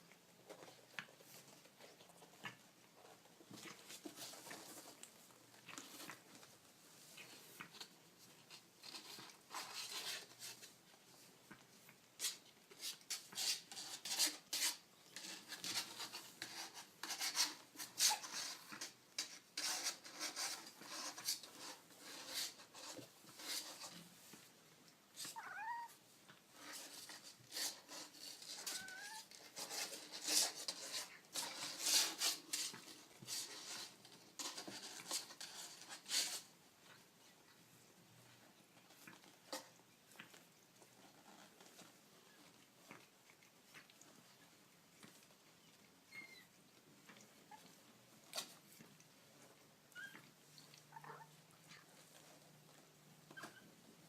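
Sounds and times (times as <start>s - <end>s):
kittens scratching and rustling: 0.0s - 54.0s.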